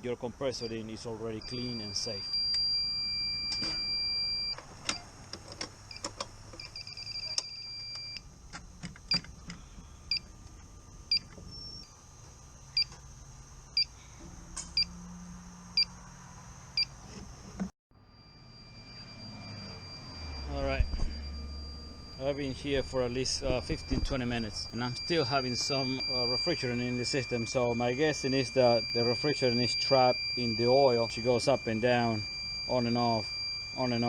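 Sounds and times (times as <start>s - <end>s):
gas detector beeping: 0.6s - 5.0s, 5.9s - 8.3s, 13.8s - 14.0s, 18.1s - 34.0s.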